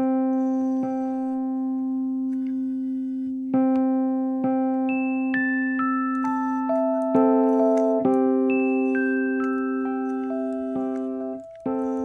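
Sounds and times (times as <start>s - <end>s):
click: 2.3s - 2.8s, 3.7s - 3.9s, 6.1s - 8.2s, 8.9s - 12.0s.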